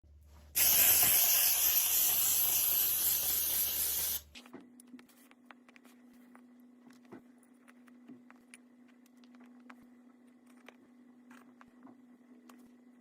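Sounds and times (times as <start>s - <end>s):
loud spraying hiss: 0.6s - 4.3s.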